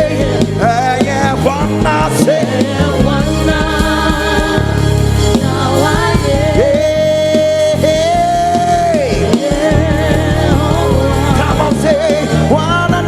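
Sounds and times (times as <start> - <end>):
live gospel band: 0.0 - 13.0
singing: 5.4 - 13.0.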